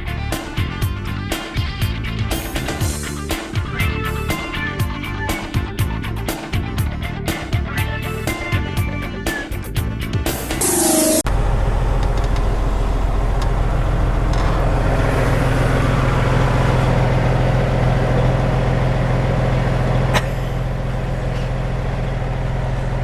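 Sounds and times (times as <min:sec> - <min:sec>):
truck engine drone: 0:10.5 - 0:23.0
road noise: 0:10.6 - 0:23.0.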